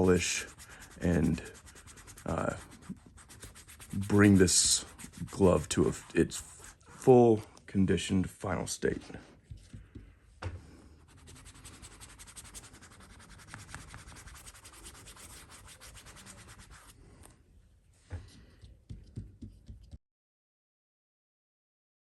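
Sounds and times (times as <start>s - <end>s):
rubbing leather glove: 0.0s - 7.0s, 11.0s - 17.3s.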